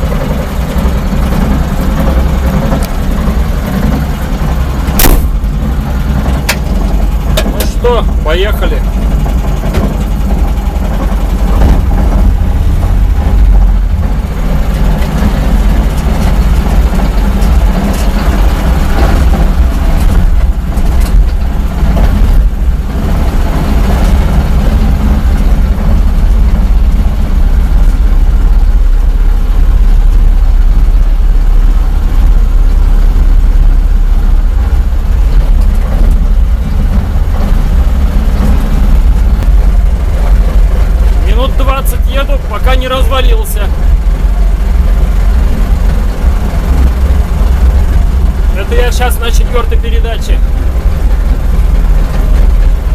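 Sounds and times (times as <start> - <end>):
road noise: 0.0 - 52.9
vehicle engine droning under load: 0.0 - 52.9.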